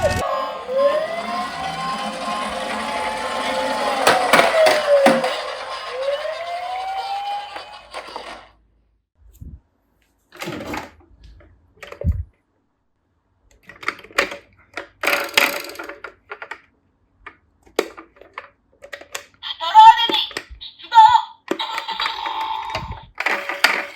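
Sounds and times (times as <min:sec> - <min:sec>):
toy electronic siren wailing: 0:00.2 - 0:08.4, 0:20.7 - 0:23.1
plastic toy cars clicking: 0:01.4 - 0:08.5, 0:13.5 - 0:19.4, 0:21.4 - 0:23.9.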